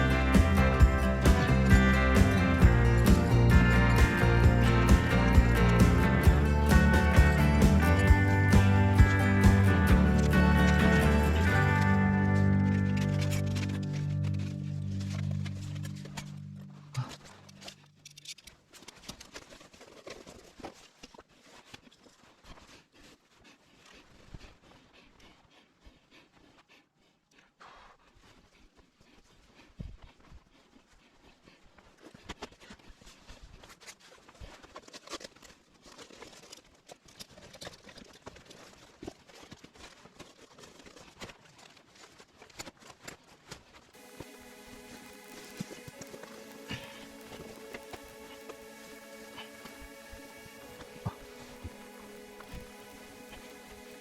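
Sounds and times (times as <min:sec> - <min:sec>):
background music: 0:00.0 - 0:17.2, 0:44.0 - 0:54.0.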